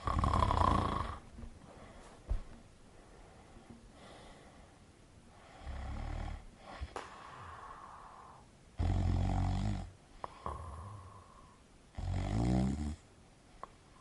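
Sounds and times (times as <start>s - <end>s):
person snoring: 0.0s - 1.2s, 5.5s - 13.0s
quiet breathing: 0.0s - 12.2s, 13.4s - 14.0s.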